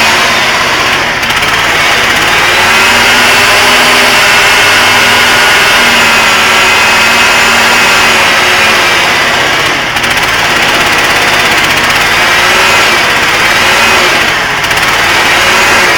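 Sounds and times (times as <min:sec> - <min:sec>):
small engine running: 0:00.0 - 0:15.9.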